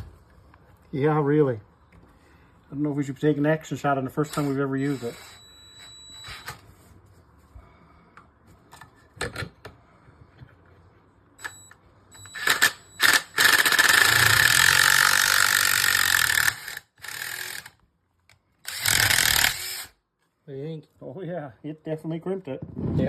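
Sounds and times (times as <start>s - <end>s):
cordless drill whining: 4.2s - 6.6s, 12.2s - 17.8s, 18.6s - 20.0s.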